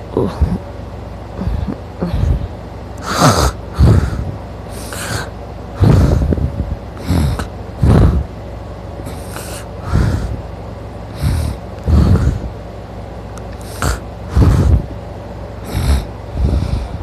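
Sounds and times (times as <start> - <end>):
man snoring loudly: 3.0 - 8.3, 11.2 - 12.5, 13.6 - 14.9, 15.6 - 16.9.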